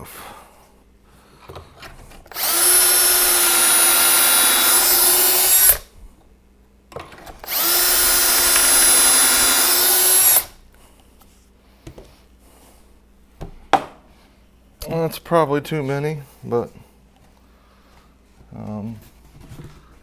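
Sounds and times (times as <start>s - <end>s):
drill boring into plywood: 2.3s - 5.8s, 7.4s - 10.5s.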